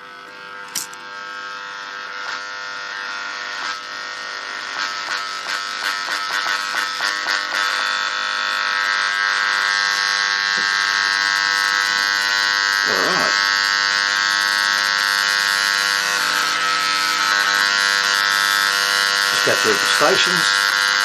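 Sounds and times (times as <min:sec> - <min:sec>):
radio speaker buzzing hum: 0:12.8 - 0:13.5, 0:19.2 - 0:20.6.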